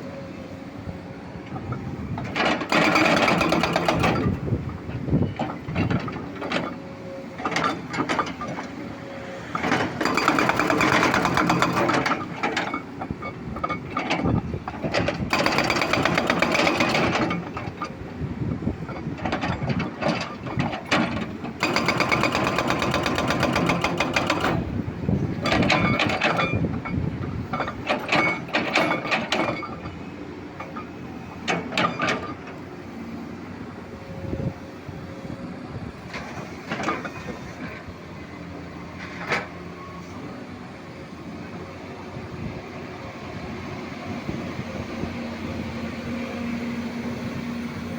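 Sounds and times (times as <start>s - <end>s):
excavator engine: 0.0s - 47.9s.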